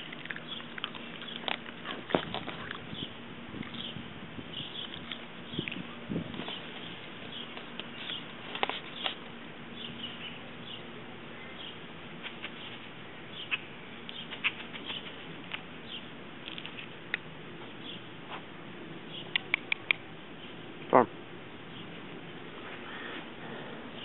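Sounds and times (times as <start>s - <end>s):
puppy chewing grass: 0.0s - 9.4s, 12.2s - 18.6s.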